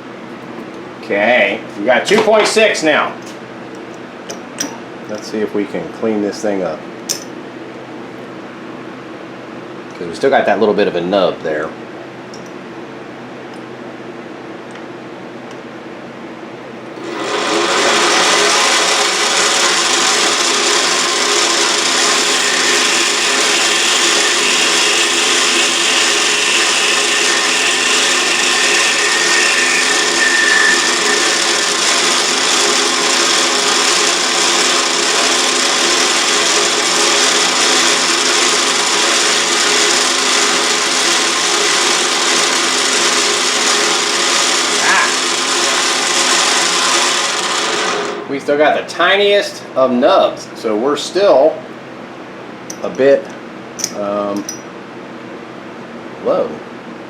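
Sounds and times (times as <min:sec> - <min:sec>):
lathe cutting hiss: 0:17.0 - 0:48.4.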